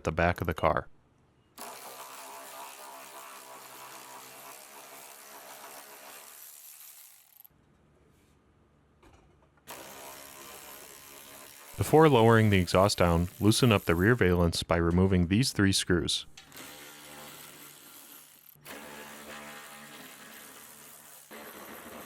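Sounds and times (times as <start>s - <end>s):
cordless power tool motor: 1.6s - 7.5s, 9.7s - 14.1s, 16.4s - 22.0s.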